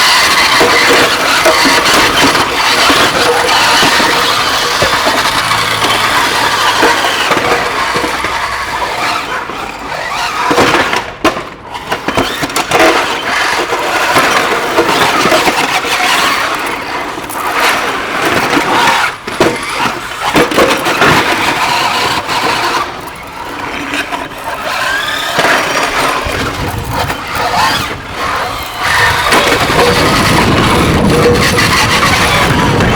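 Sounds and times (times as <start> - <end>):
robots banging together: 0.0 - 9.2, 24.6 - 32.9
electric motors whining: 0.0 - 10.7, 21.2 - 32.9
scraping and squealing: 0.0 - 32.9.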